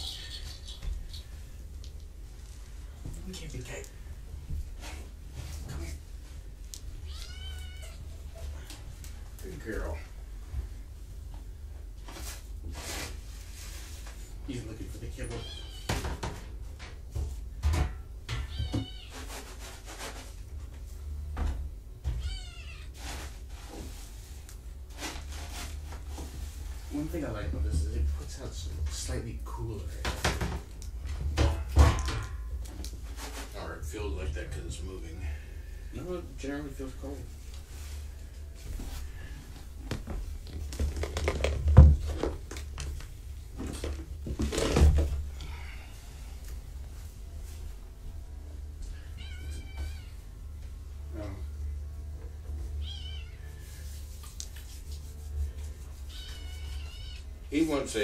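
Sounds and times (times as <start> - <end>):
steady low hum: 0.0 - 58.0
cat meowing: 7.0 - 8.1, 15.3 - 16.0, 18.4 - 19.2, 22.1 - 23.0, 49.0 - 50.2, 52.8 - 53.6, 56.1 - 57.3
crinkling and rustling: 10.6 - 34.3, 36.4 - 45.4.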